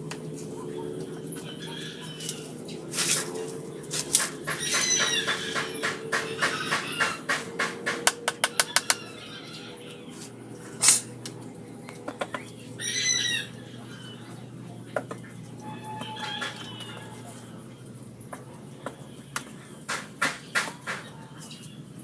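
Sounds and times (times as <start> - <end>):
steady low hum: 0.0 - 22.0
sharp knocks and clicks: 4.0 - 9.0, 18.3 - 21.1.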